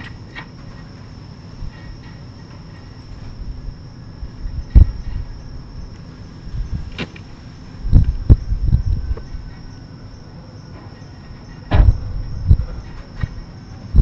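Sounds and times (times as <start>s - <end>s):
crickets chirring: 0.0s - 14.0s
dull bangs: 11.7s - 13.4s.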